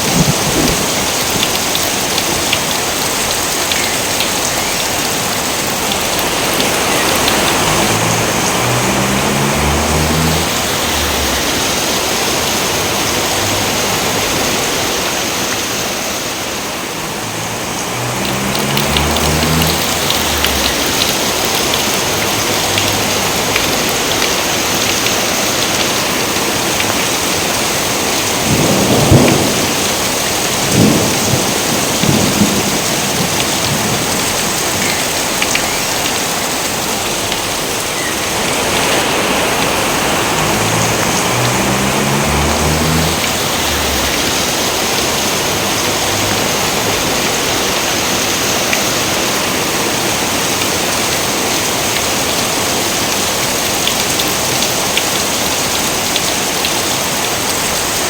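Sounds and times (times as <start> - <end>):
thunder cracking: 0.0 - 1.5, 28.3 - 34.3
heavy rain falling: 0.0 - 58.0.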